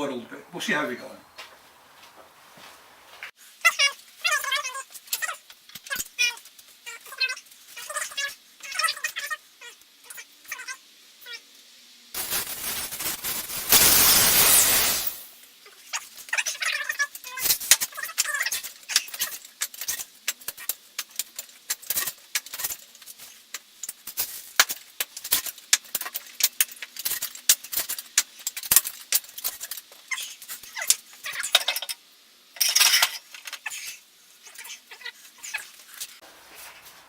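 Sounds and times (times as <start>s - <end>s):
metal tools clinking: 12.2s - 15.2s, 32.6s - 33.9s
scraping burst: 12.2s - 15.3s.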